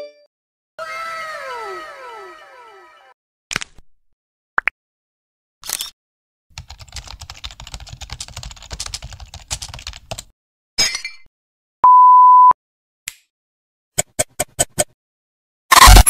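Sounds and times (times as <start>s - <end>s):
fast keyboard typing: 6.6s - 10.3s
censor bleep: 11.8s - 12.6s.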